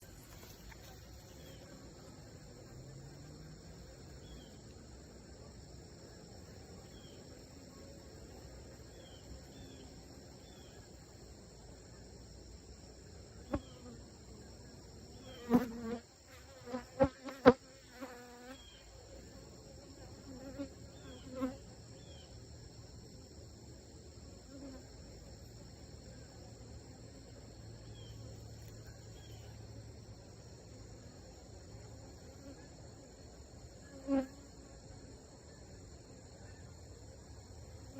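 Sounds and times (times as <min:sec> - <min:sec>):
honeybees buzzing past: 0:13.2 - 0:22.3, 0:24.0 - 0:35.0.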